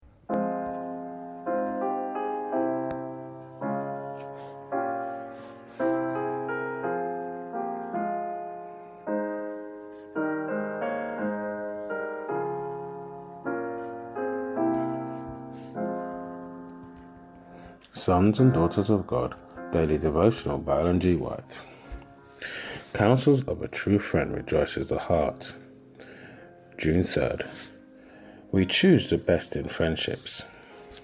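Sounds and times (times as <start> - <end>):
slow gentle piano chords: 0.0 - 31.0.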